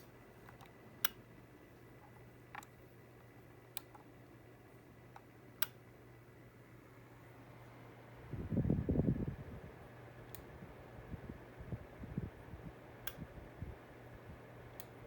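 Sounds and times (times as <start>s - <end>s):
air conditioner fan humming: 0.0s - 15.0s.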